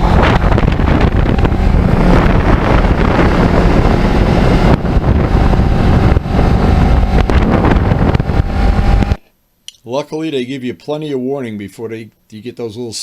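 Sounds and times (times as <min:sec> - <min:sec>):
motorcycle engine running: 0:00.0 - 0:09.2
wind rushing over microphone: 0:00.0 - 0:09.2.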